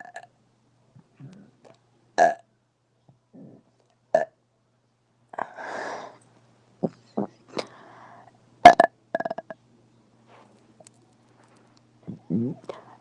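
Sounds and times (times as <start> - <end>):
woman burping: 8.7 - 9.5.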